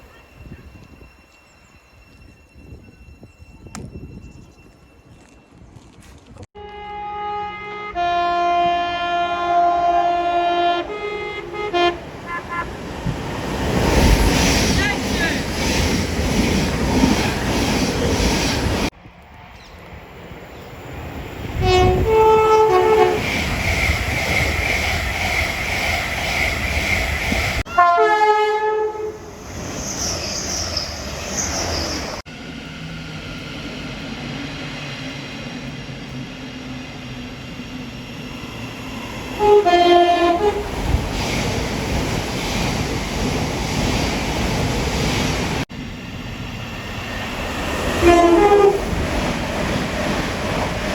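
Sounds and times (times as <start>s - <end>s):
trains rumbling by: 0.0s - 50.9s
two-tone train horn: 6.6s - 12.6s, 21.6s - 23.2s, 27.7s - 29.2s, 39.4s - 40.7s, 48.0s - 48.9s.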